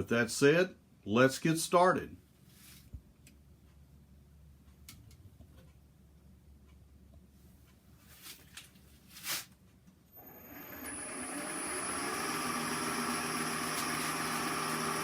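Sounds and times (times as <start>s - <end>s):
wood lathe motor whining: 10.2s - 15.0s.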